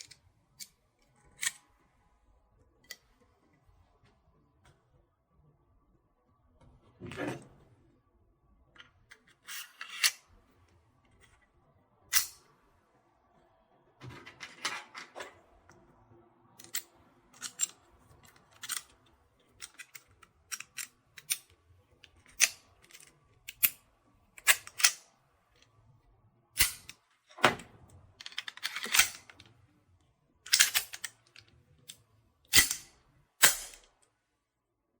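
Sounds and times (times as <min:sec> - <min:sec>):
metallic clicks of toy gun handling: 0:01.3 - 0:01.6, 0:09.2 - 0:10.2, 0:12.1 - 0:12.4, 0:16.6 - 0:23.8, 0:24.4 - 0:25.0, 0:26.6 - 0:27.0, 0:28.2 - 0:29.5, 0:30.5 - 0:33.9.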